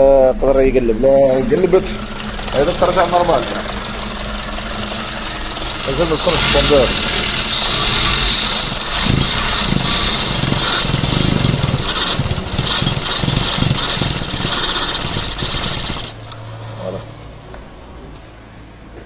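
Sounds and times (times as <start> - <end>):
car engine running unevenly: 0.9 - 16.4.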